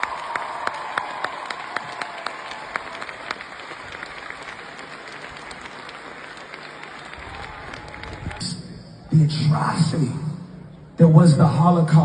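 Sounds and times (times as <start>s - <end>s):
applause: 0.0s - 8.8s.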